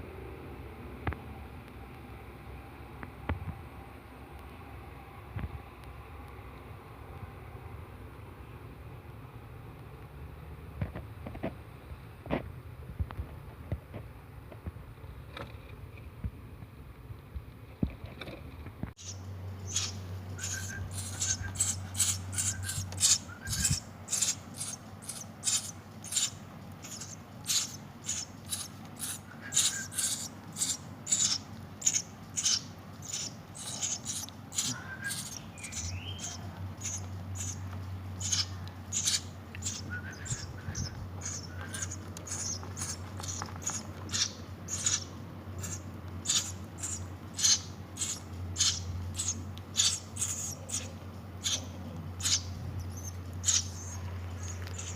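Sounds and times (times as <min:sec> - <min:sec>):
faint low hum: 0:00.0 - 0:54.9
nestlings cheeping: 0:19.0 - 0:54.9.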